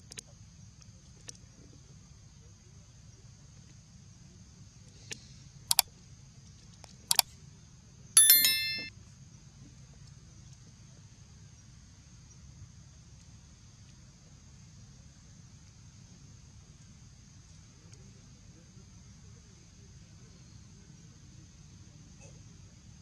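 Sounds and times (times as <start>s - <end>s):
bright ding: 8.2s - 8.9s
sharp clicks: 8.2s - 8.9s.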